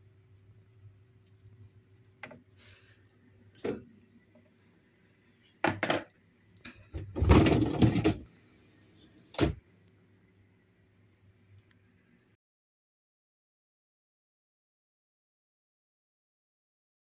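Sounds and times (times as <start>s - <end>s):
objects clattering: 6.7s - 8.3s
knocks and thumps: 7.0s - 8.3s.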